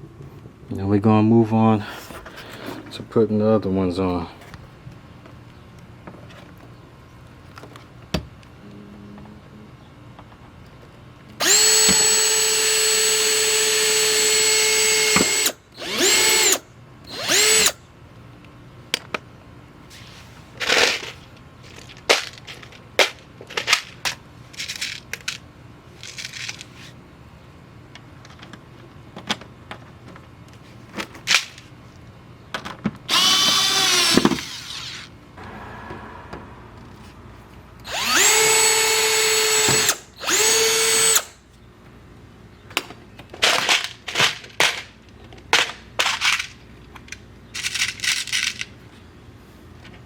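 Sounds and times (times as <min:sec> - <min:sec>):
power drill running: 0:11.4 - 0:17.8, 0:33.1 - 0:35.0, 0:37.8 - 0:41.3.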